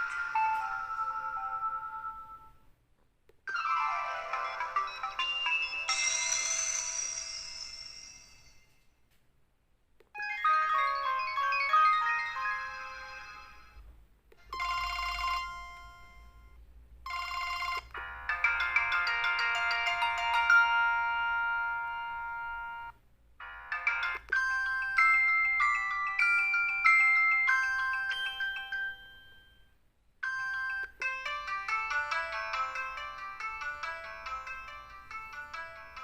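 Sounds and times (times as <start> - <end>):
phone playing polyphonic tones: 0.0 - 2.6.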